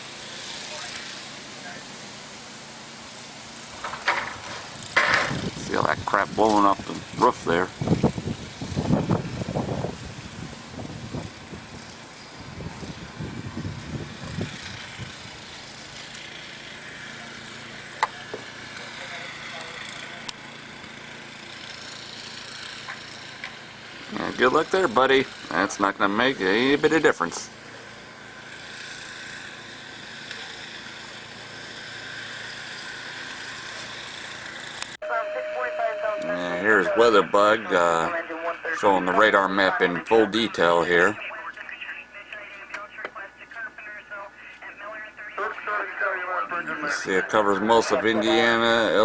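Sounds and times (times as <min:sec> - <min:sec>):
wind hiss: 0:00.0 - 0:16.9
motor running: 0:00.0 - 0:41.1.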